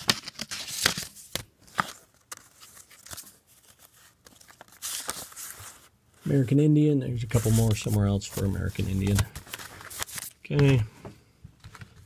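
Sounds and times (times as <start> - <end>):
paper rustling: 0.0 - 10.9.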